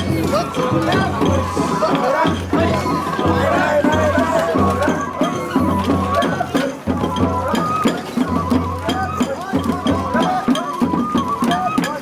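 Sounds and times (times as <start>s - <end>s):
bamboo flute melody: 0.0s - 12.0s
drums: 0.0s - 12.0s
sharp percussive strikes: 0.0s - 12.0s.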